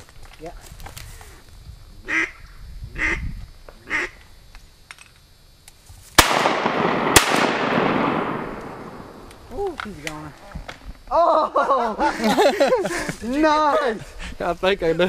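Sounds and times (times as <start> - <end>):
duck quacks: 2.1 - 2.4, 3.9 - 4.2
shotgun shots with echo: 6.2 - 9.2.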